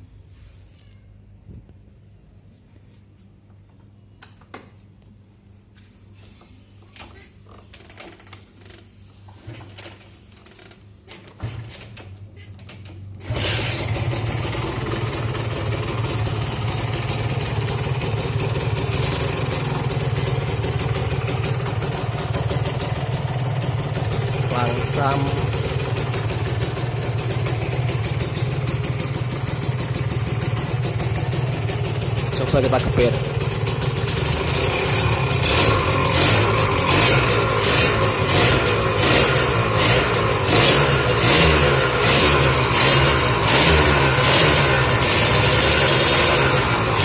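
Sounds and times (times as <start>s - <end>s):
two-stroke motorcycle engine running: 13.2s - 47.0s.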